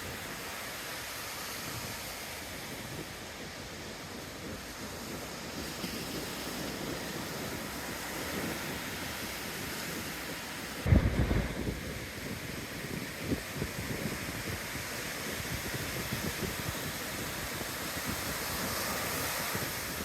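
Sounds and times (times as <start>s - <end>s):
ocean surf washing in: 0.0s - 20.0s
wind buffeting microphone: 1.4s - 20.0s.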